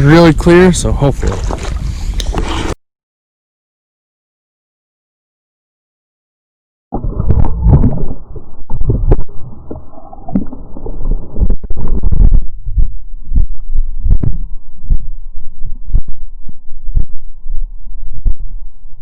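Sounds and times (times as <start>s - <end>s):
underwater water churning: 7.0s - 12.3s.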